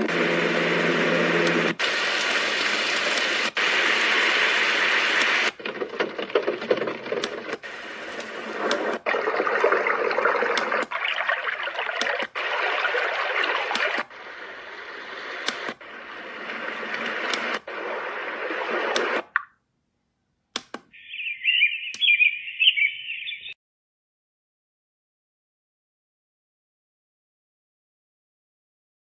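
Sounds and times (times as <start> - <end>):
white noise machine sounds: 0.0 - 5.7, 7.2 - 9.1, 10.4 - 19.3.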